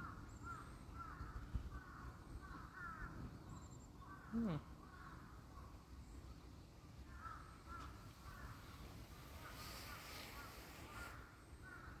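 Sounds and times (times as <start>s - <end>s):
soft rustle: 7.7s - 11.8s.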